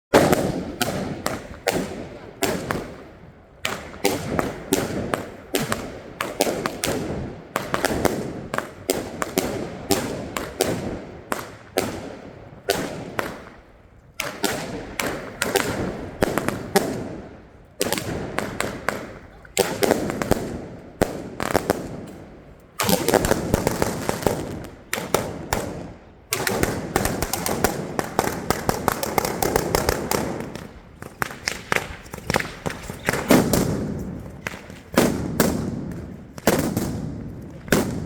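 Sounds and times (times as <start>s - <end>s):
firecrackers banging: 0.1s - 38.0s.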